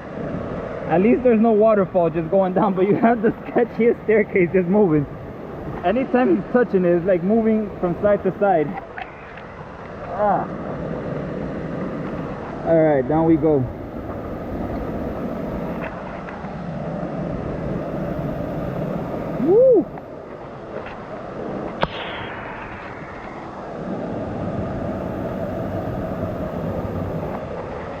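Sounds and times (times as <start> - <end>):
person shouting woo: 19.4 - 20.0
sharp knock: 21.8 - 23.0.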